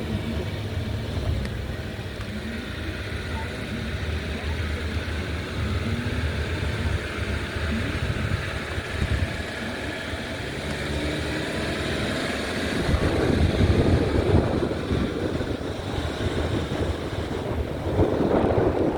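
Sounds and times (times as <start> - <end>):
vehicle engine rumble: 0.0 - 18.9
wind buffeting microphone: 5.5 - 10.5, 11.4 - 18.9.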